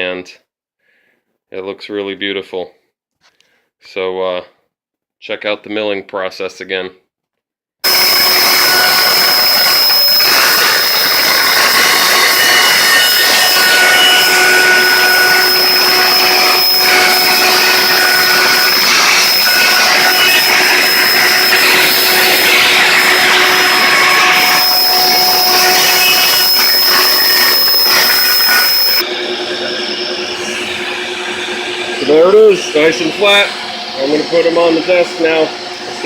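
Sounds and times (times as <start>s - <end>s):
woodworking machine with high whine: 7.8s - 36.0s.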